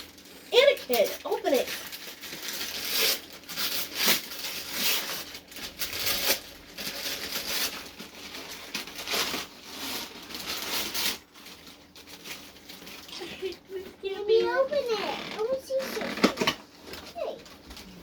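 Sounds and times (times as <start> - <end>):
wrapping paper tearing and crumpling: 0.0 - 18.0.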